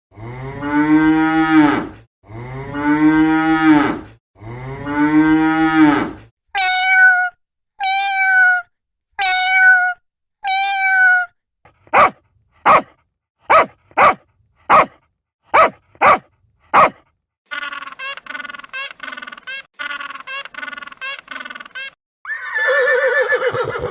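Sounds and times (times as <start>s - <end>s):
cow mooing: 0.2s - 6.2s
cat meowing: 6.6s - 11.3s.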